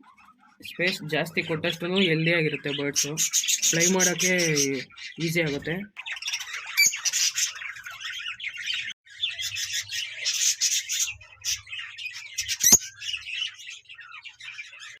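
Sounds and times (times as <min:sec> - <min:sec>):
budgerigars chattering and chirping: 0:00.0 - 0:15.0.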